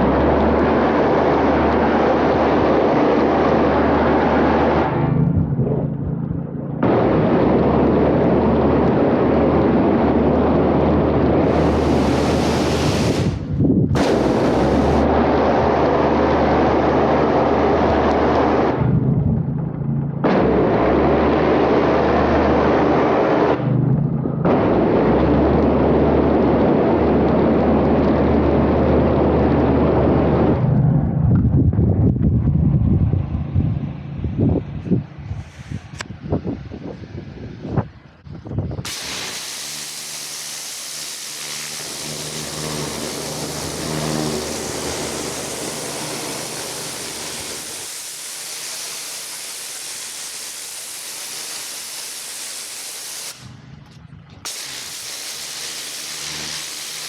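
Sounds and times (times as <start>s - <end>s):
pressure washer engine running: 0.0s - 5.1s, 6.8s - 18.8s, 38.9s - 53.6s, 54.4s - 57.0s
pressure washer water jet hissing: 11.4s - 15.0s, 38.9s - 53.6s, 54.5s - 57.0s.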